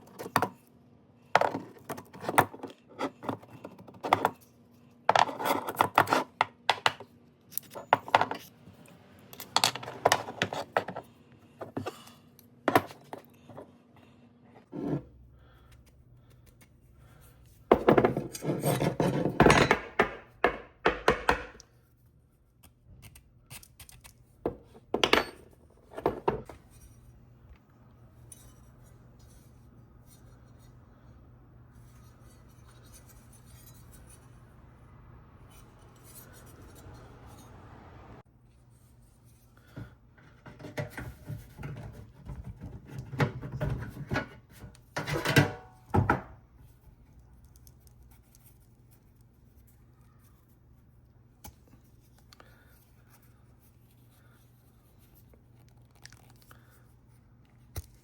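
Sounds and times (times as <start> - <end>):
hand tools scraping metal parts: 17.8 - 20.0, 31.9 - 34.4, 35.4 - 37.6.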